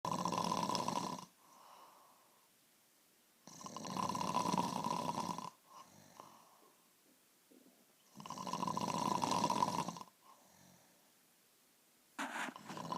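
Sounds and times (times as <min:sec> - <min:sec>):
woman snoring heavily: 0:00.1 - 0:01.3, 0:03.4 - 0:06.0, 0:08.1 - 0:10.8, 0:12.6 - 0:12.9
faint breathing: 0:01.4 - 0:02.6, 0:05.6 - 0:06.9, 0:10.1 - 0:11.2.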